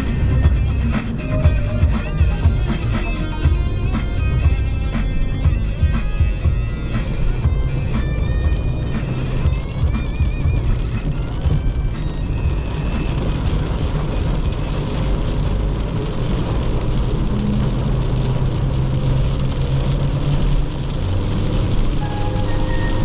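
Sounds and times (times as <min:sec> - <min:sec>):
rain: 0:00.0 - 0:01.9, 0:05.8 - 0:23.0
car engine and road drone: 0:00.0 - 0:23.0
tyres hissing on wet road: 0:06.8 - 0:23.0.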